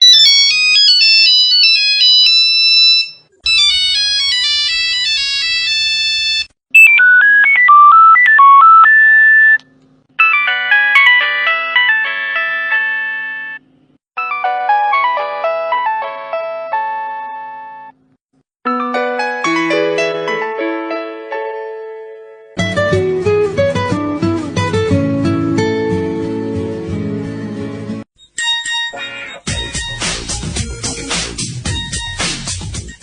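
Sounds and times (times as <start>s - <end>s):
mobile phone ringtones: 5.1s - 9.6s, 10.2s - 13.6s.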